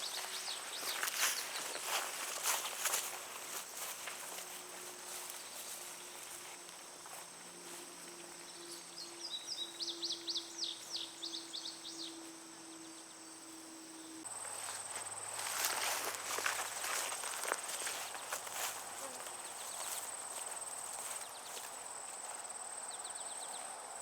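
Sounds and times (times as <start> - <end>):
footsteps swishing through weeds: 0.0 - 8.1, 14.5 - 22.4
insects trilling: 0.0 - 23.7.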